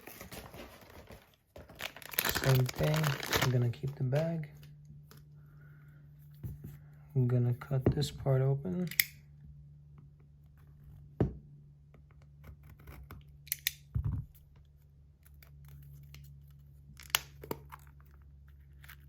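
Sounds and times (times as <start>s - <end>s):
packaging crinkling and snipping: 0.0s - 4.8s
steady low hum: 2.1s - 19.0s.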